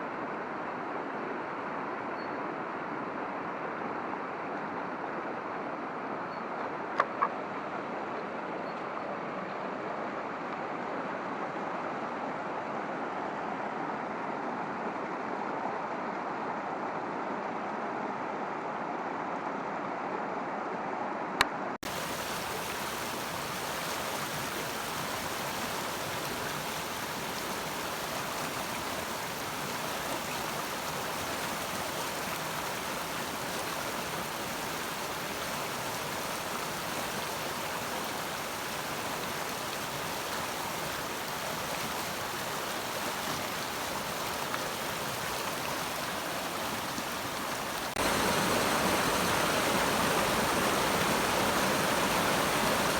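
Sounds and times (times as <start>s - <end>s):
stream rushing over rocks: 21.8s - 52.9s.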